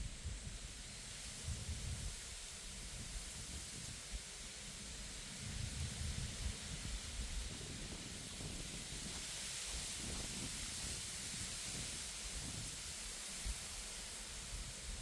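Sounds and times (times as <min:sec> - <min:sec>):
wind rustling reeds: 0:00.0 - 0:15.0
wind buffeting microphone: 0:05.3 - 0:13.7.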